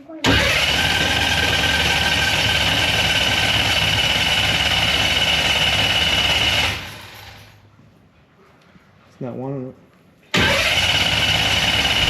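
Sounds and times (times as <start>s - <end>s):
starter cranking engine with whine: 0.2s - 7.6s, 10.3s - 12.0s.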